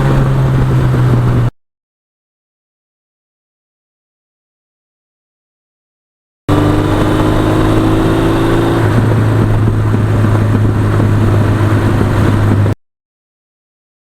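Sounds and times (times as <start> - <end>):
motorcycle engine running: 0.0 - 1.5, 6.5 - 12.8.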